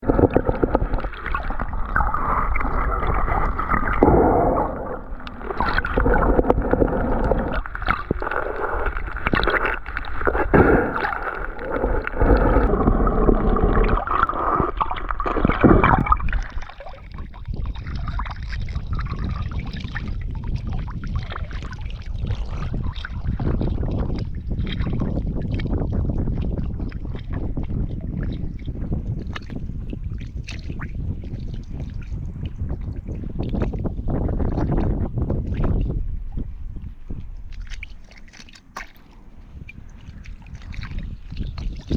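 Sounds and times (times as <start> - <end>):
light clicks underwater: 0.0 - 17.2, 37.1 - 41.9
underwater gurgling and sloshing: 0.0 - 41.9.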